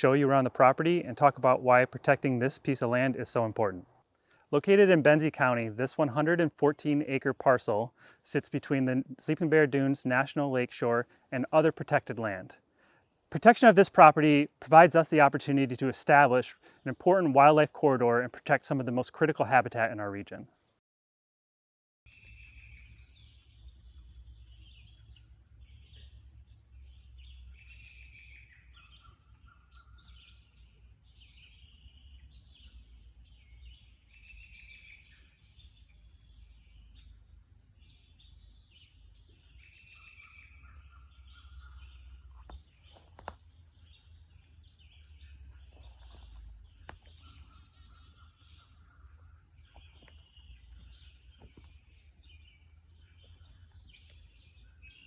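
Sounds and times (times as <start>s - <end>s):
songbirds singing: 0.0s - 20.8s, 22.1s - 55.0s.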